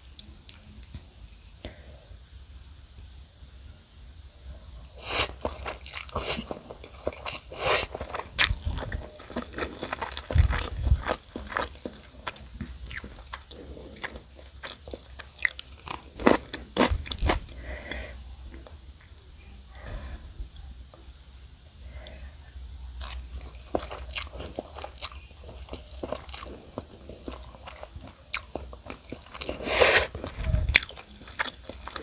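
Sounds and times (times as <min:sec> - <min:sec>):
crunchy chewing of fried chicken: 0:04.6 - 0:19.3, 0:22.9 - 0:32.0.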